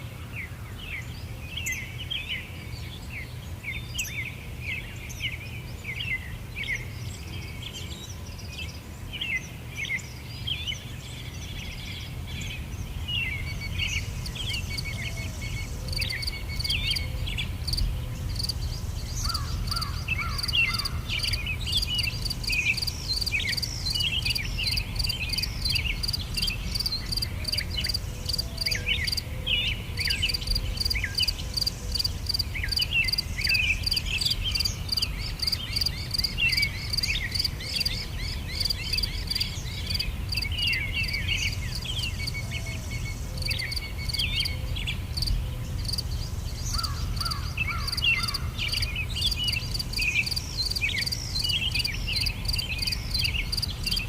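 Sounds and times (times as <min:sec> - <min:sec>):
birds chirping: 0:00.0 - 0:54.0
insects trilling: 0:13.3 - 0:29.3, 0:30.0 - 0:44.6, 0:45.2 - 0:54.0.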